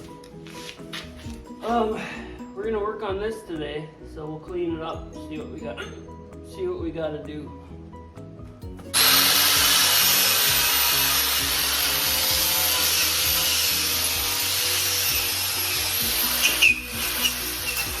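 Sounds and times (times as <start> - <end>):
background music: 0.0 - 18.0
power tool hissing and whining: 8.9 - 18.0.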